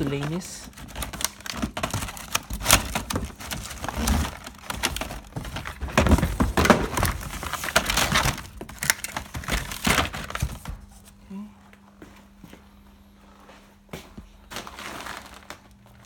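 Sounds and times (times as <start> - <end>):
items clattering and knocking: 0.0 - 11.1
rustling: 14.5 - 16.0.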